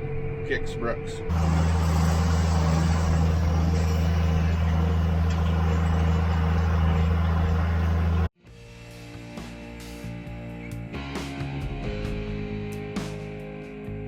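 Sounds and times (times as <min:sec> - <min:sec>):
tractor engine drone: 0:01.2 - 0:08.3.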